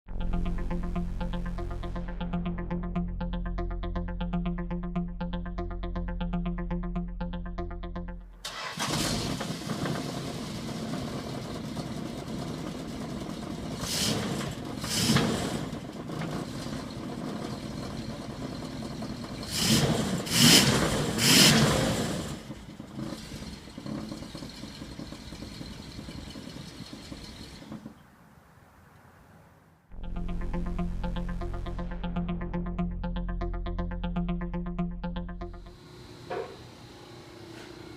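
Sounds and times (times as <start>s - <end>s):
car engine idling and revving: 8.4s - 28.0s.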